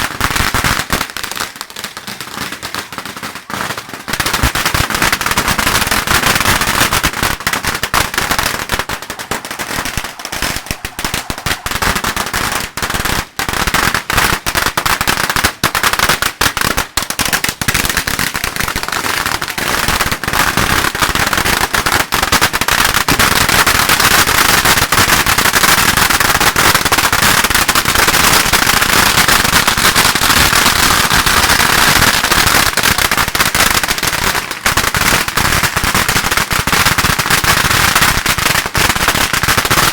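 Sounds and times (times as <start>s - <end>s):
firecrackers crackling: 0.0s - 39.9s.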